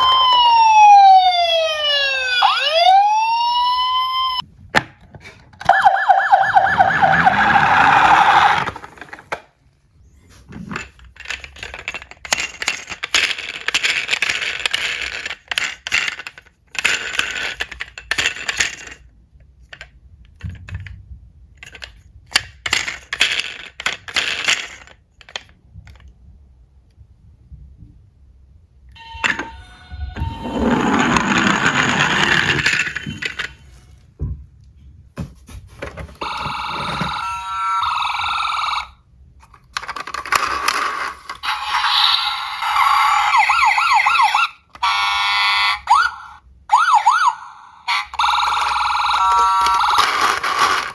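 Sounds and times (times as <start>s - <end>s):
warbling toy siren: 0.0s - 4.4s, 5.6s - 9.0s, 29.0s - 32.3s, 36.2s - 39.0s, 41.4s - 50.4s
metal toy cars clinking: 10.6s - 26.1s, 30.4s - 33.9s, 48.1s - 50.9s.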